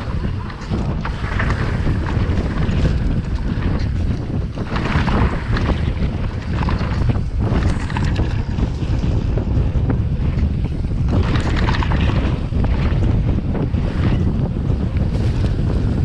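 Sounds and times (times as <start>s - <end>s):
bike clattering over rough ground: 0.0s - 16.0s
wind buffeting microphone: 0.0s - 16.0s.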